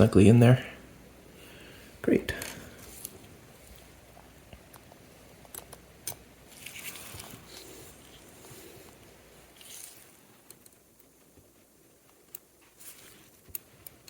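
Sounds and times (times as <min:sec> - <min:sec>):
soft rustling: 0:06.4 - 0:14.0.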